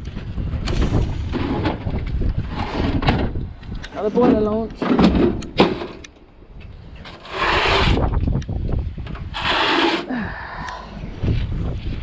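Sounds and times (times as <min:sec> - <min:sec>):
metal boiler scraping: 0:07.1 - 0:08.1, 0:09.2 - 0:10.2.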